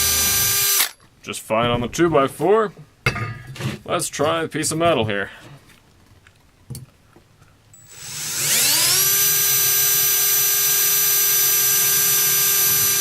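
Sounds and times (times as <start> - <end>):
electric drill whining into metal: 0.0 - 1.0, 7.8 - 13.0.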